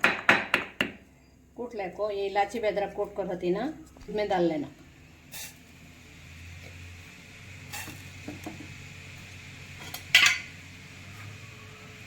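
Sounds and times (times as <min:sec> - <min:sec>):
utensil tapping cooking pan: 0:07.7 - 0:08.8.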